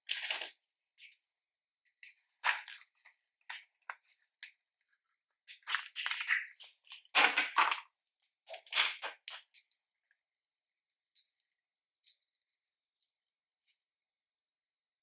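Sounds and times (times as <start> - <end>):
slime squishing and popping: 5.5 - 9.6.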